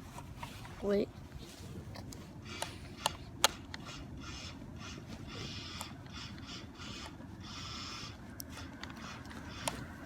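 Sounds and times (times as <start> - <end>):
toy car motor whirring: 2.4 - 10.0.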